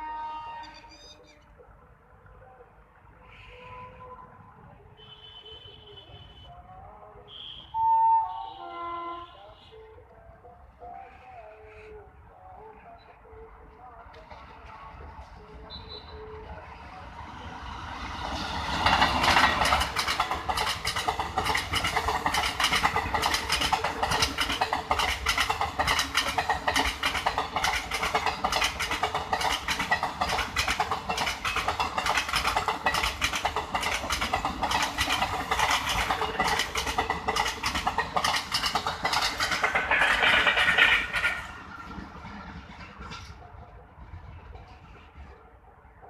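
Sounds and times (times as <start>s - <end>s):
train wheels clattering over rails: 13.9s - 45.5s.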